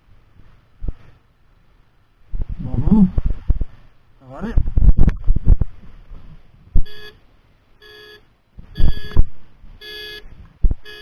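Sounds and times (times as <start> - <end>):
electronic beeps: 6.8 - 7.2, 8.8 - 10.2.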